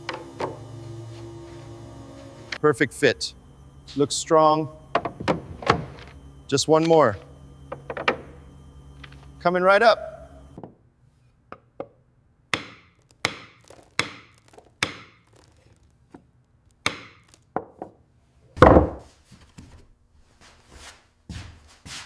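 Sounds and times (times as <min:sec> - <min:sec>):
mallet knocking on wood: 0:12.6 - 0:14.2.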